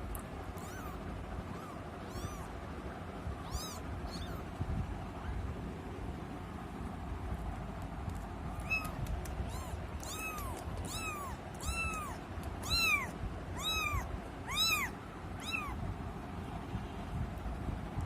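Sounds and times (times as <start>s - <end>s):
kitten mewing: 0.5s - 4.6s, 8.5s - 15.9s.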